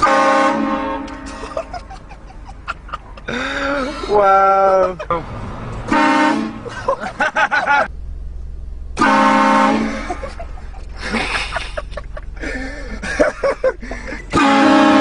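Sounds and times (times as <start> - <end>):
loud car horn blast: 0.0 - 1.7, 5.9 - 6.7, 9.0 - 10.2, 14.3 - 15.0.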